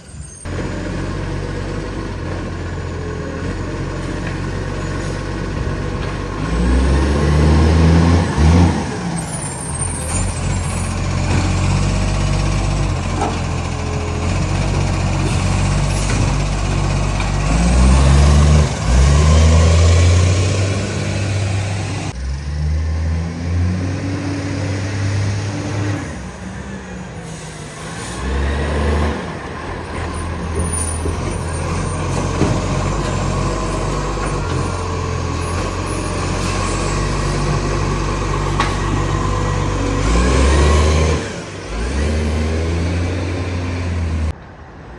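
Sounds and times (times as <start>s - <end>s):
diesel engine revving: 0.0s - 44.4s
air brake hissing: 27.2s - 28.5s.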